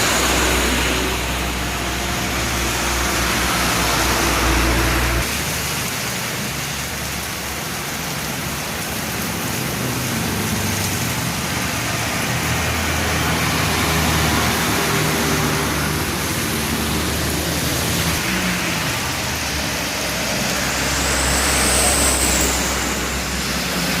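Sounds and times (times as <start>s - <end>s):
road traffic in rain: 0.0s - 24.0s
downpour hiss: 5.3s - 24.0s.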